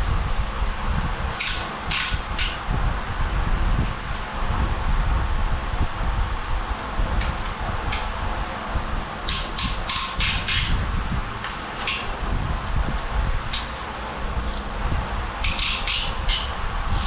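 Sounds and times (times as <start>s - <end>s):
steady low rumble: 0.0s - 17.0s
hand tools clicking on metal: 1.4s - 2.6s, 9.2s - 10.8s, 15.4s - 17.0s.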